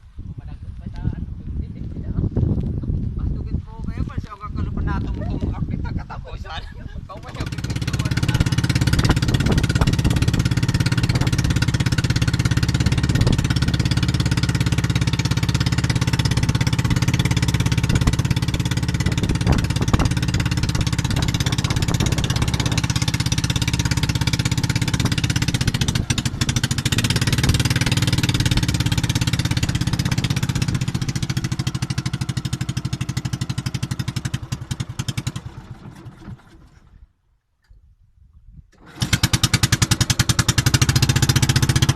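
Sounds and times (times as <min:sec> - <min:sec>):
small engine running: 0:07.2 - 0:37.0, 0:38.8 - 0:41.9.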